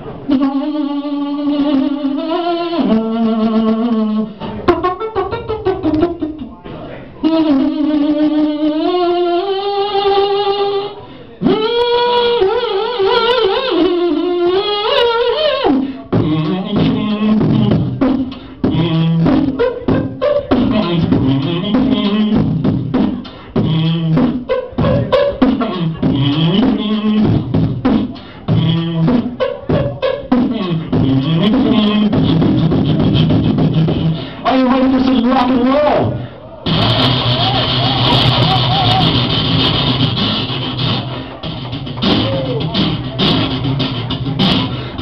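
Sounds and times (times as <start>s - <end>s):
beatbox rhythm: 0.0s - 6.6s, 7.2s - 45.0s
low vocal bass line: 0.3s - 6.5s, 7.2s - 44.9s
held vocal notes sliding in pitch: 23.6s - 27.5s, 36.7s - 41.4s.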